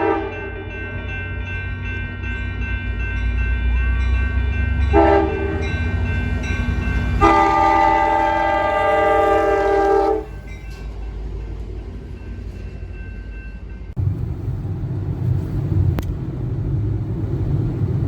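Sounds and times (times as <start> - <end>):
train air horn blasts: 0.0 - 0.6, 4.9 - 5.7, 7.1 - 10.4
steady low rumble: 10.9 - 18.0.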